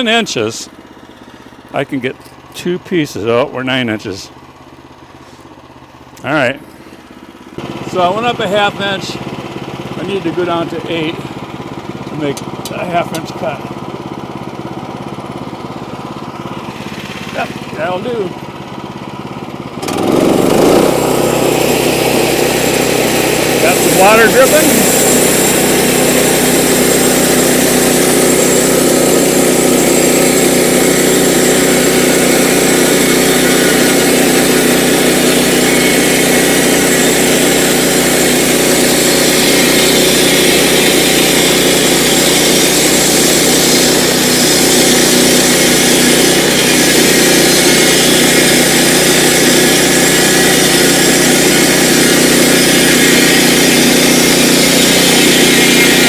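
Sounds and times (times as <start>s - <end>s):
sawmill engine running: 0.0s - 56.0s.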